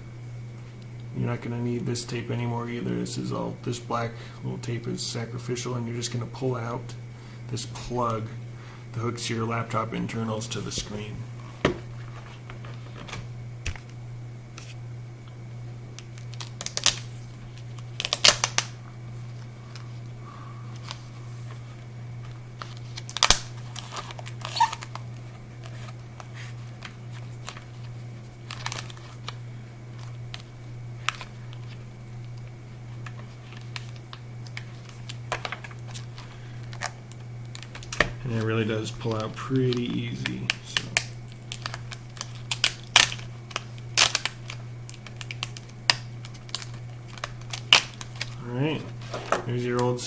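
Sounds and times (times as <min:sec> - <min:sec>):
steady low hum: 0:00.0 - 0:50.0
tape crinkling and peeling: 0:11.9 - 0:20.1, 0:20.7 - 0:50.0.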